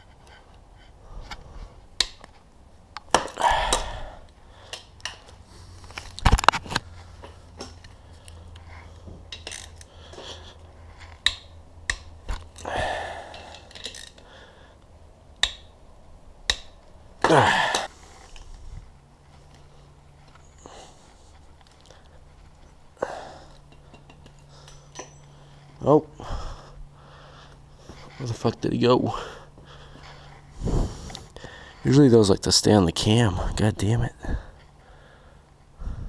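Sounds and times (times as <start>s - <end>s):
tools and metal parts clinking: 5.9s - 10.4s, 11.0s - 14.3s, 23.5s - 25.8s
metal parts clattering: 9.3s - 10.3s, 13.3s - 14.2s.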